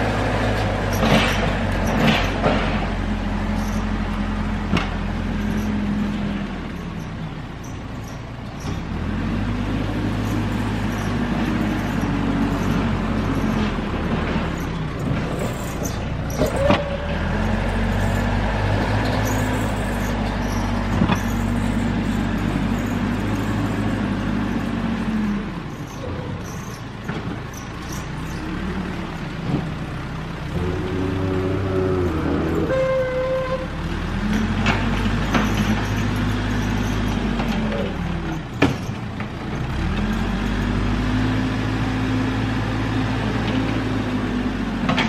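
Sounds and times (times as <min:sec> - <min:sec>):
diesel engine running: 0:00.0 - 0:45.0.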